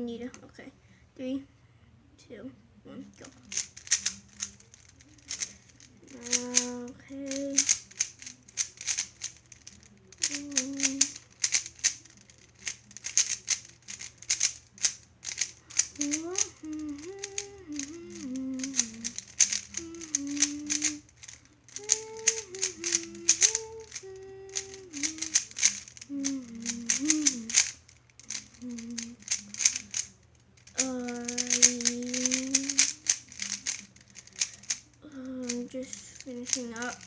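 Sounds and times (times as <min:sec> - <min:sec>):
speedcube clicking and rattling: 0:03.2 - 0:37.0
person humming a tune: 0:05.2 - 0:12.2, 0:13.0 - 0:30.0, 0:30.7 - 0:35.6.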